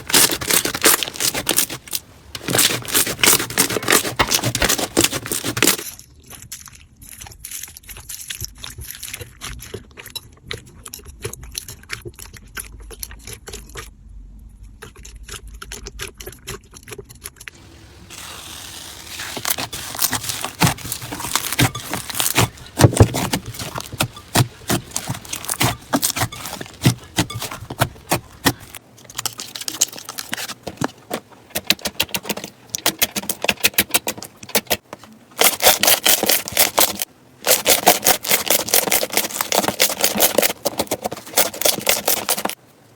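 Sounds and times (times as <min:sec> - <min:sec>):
slime crackling and popping: 0:00.0 - 0:09.5, 0:18.0 - 0:30.5, 0:35.4 - 0:42.5.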